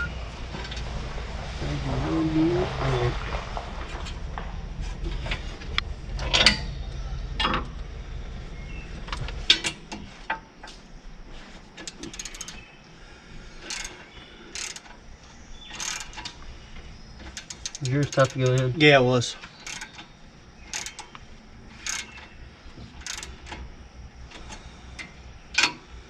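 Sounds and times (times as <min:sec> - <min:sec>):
low rumble: 0:00.0 - 0:11.3
quick clicks: 0:11.8 - 0:12.6
metal tools clinking and knocking: 0:11.8 - 0:12.7, 0:13.6 - 0:15.0, 0:15.6 - 0:16.4, 0:17.2 - 0:21.2, 0:21.8 - 0:23.6.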